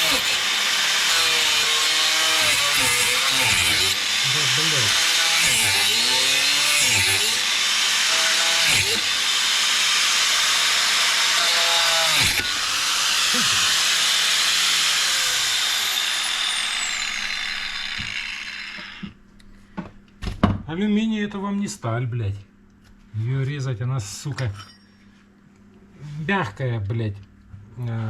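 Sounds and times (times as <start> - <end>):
power tool cutting aluminium: 0.0 - 19.1.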